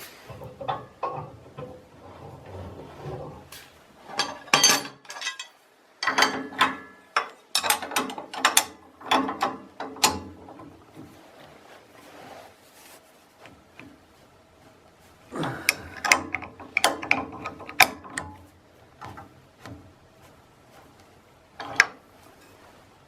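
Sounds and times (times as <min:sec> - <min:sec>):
metal clicks and rattles: 0:00.0 - 0:11.0, 0:15.7 - 0:19.8, 0:21.5 - 0:22.6.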